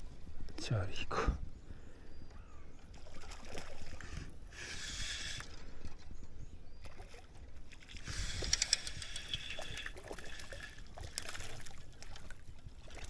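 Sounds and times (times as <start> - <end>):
water splashing and lapping: 2.8 - 13.0
small knocks and clicks: 8.0 - 11.5.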